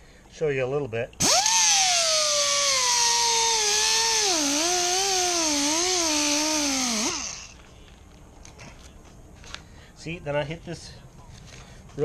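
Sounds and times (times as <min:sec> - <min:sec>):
power tool motor whine: 0:01.2 - 0:07.6.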